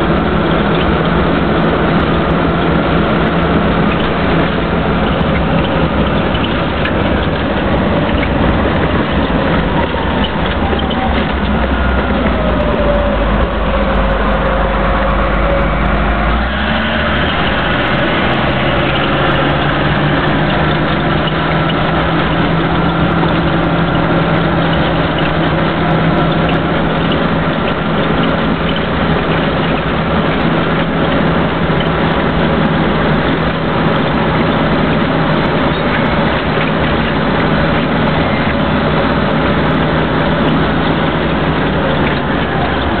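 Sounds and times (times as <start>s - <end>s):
bulldozer diesel engine running: 0.0s - 43.0s.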